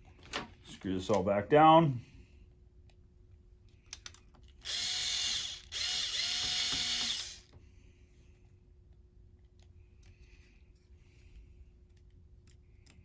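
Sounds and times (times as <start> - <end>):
power screwdriver whining: 4.6 - 7.5.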